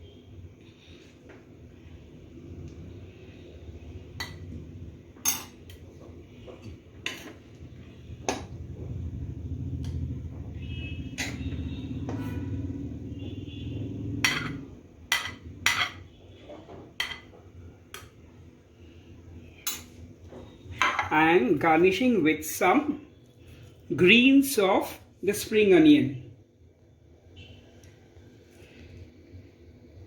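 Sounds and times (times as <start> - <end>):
utensil clinking against pan and plate: 14.3 - 16.0, 17.0 - 17.4.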